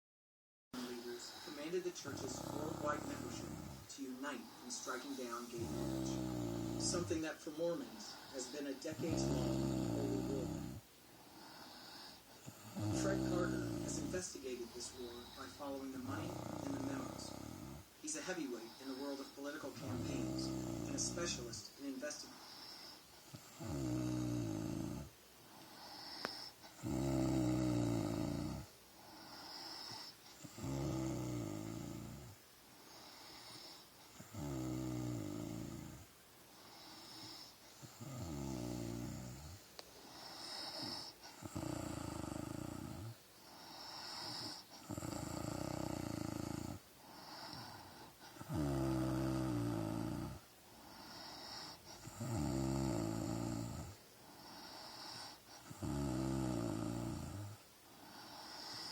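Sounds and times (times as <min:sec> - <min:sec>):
hissing breath: 0:00.8 - 0:09.3
woman snoring: 0:00.8 - 0:58.9.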